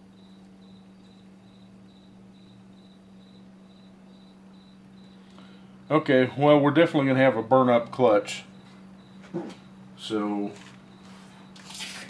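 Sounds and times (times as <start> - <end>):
steady low hum: 0.0 - 12.0
faint high chirp: 0.1 - 6.0, 8.5 - 10.2.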